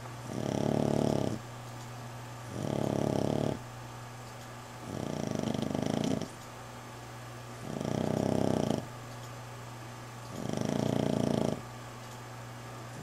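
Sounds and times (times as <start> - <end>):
dog snoring: 0.2 - 1.4, 2.5 - 3.6, 4.8 - 6.4, 7.6 - 8.9, 10.3 - 11.7.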